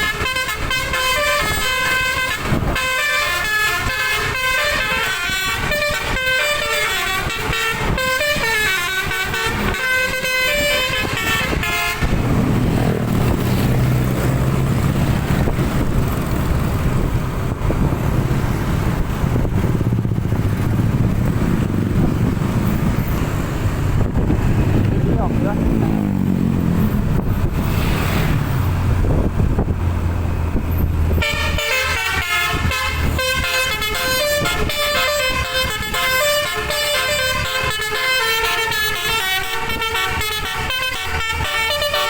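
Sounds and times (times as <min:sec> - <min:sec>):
musical bus horn melody: 0:00.0 - 0:12.7, 0:31.1 - 0:42.0
bus engine rumbling: 0:00.0 - 0:42.0
road noise: 0:00.0 - 0:42.0.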